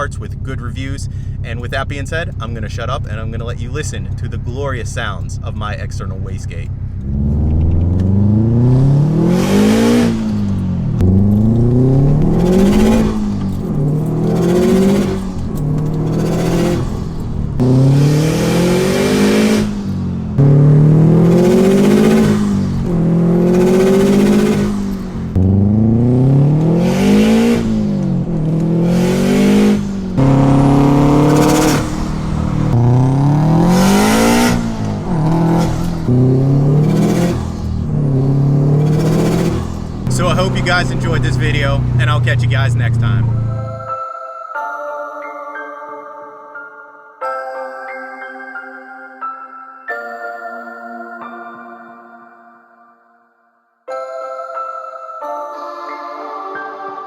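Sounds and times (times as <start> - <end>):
engine revving: 0.0 - 44.0.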